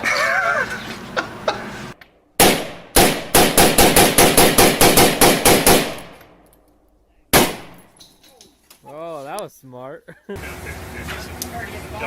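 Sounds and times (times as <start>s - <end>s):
automatic gunfire: 2.4s - 6.2s, 7.3s - 7.8s
gunshots: 2.4s - 6.2s, 7.3s - 7.9s.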